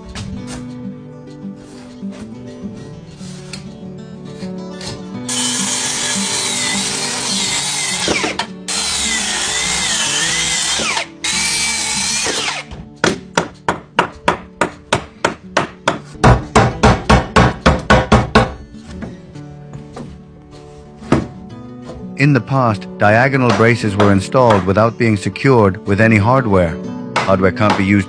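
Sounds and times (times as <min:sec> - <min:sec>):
drill driving screws: 0:05.3 - 0:12.7
hammer tapping on wood: 0:13.0 - 0:18.6, 0:23.5 - 0:24.8, 0:27.2 - 0:27.9.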